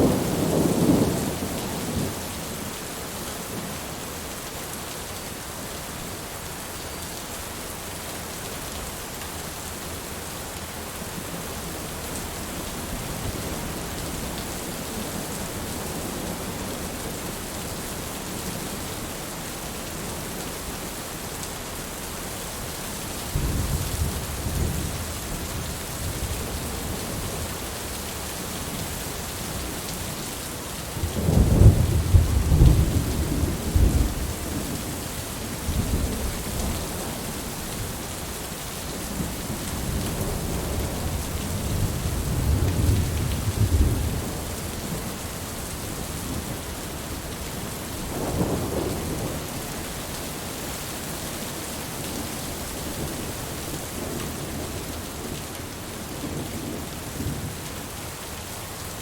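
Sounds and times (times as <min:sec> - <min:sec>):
heavy rain falling: 0:00.0 - 0:59.0
thunder rumbling: 0:48.1 - 0:49.8.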